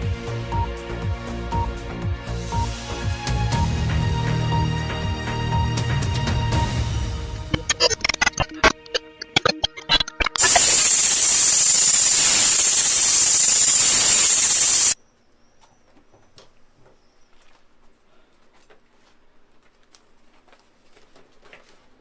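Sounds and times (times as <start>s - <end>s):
electronic blips and clicks: 7.4s - 15.0s
white-noise static burst: 7.5s - 8.8s, 9.4s - 15.0s
small ticks: 7.6s - 15.0s.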